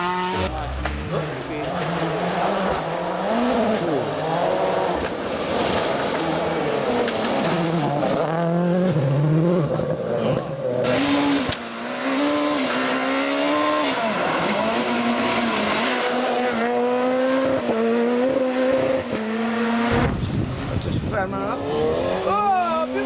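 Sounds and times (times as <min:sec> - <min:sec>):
rally car engine at full throttle: 0:00.0 - 0:23.0
sharp crack: 0:00.4 - 0:02.0.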